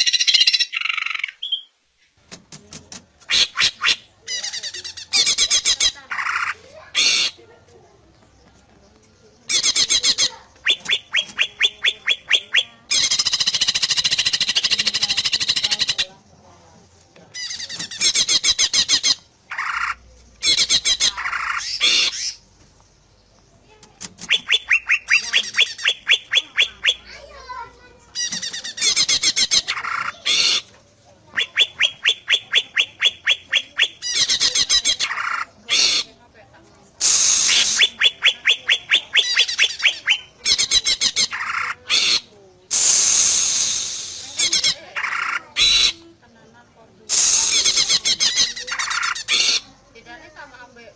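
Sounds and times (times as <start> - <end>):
bird whistling and trilling: 0.0 - 1.7, 9.5 - 16.0, 24.2 - 27.2, 31.3 - 35.4, 37.0 - 46.0, 47.1 - 49.6
bird singing whistles: 0.2 - 1.7, 24.2 - 27.1, 37.0 - 40.3, 42.7 - 44.7.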